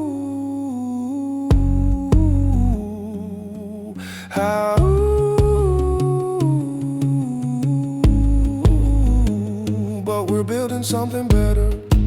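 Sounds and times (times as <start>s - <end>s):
bass: 1.5s - 3.7s, 4.6s - 12.0s.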